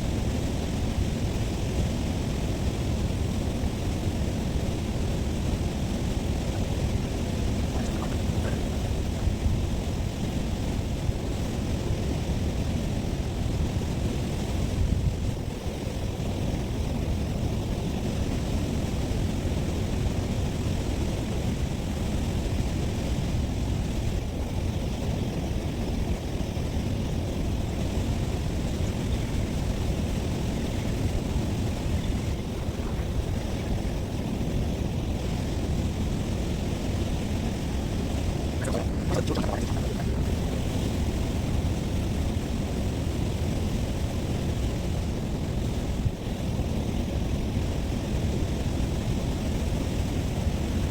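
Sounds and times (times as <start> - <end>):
wind rumbling on microphone: 4.2 - 11.5, 37.8 - 42.6.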